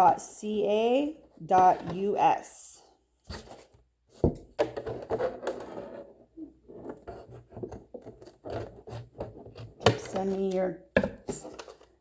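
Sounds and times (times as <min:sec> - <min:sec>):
plastic jug clicks and scraping: 0:03.3 - 0:12.0.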